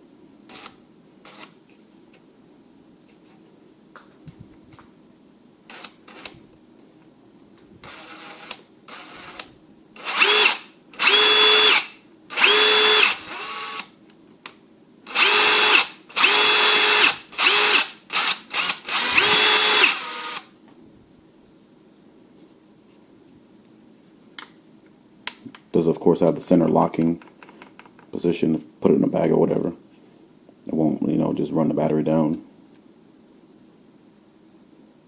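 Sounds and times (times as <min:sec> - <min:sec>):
impact wrench motor whine: 0:07.8 - 0:13.9, 0:15.1 - 0:20.5.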